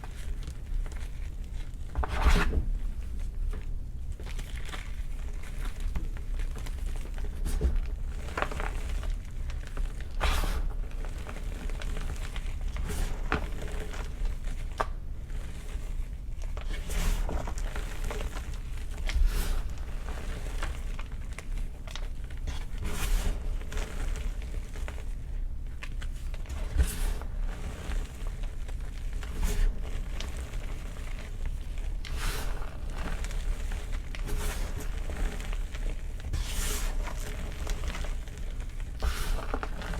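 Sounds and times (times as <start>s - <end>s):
chalk crushed and crunching: 4.2s - 25.2s, 25.9s - 39.9s.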